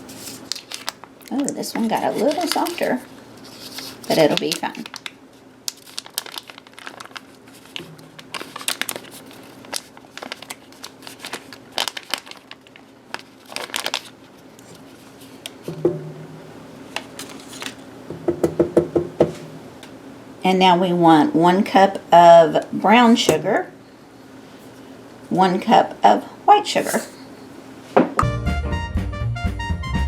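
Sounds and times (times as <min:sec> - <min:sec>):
paper wrappers crinkling: 0:00.0 - 0:15.7, 0:16.8 - 0:17.9.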